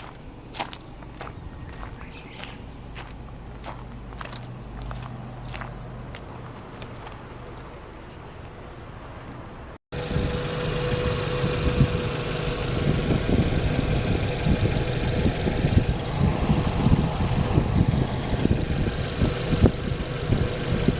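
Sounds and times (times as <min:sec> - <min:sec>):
van engine idling: 0:09.9 - 0:20.9.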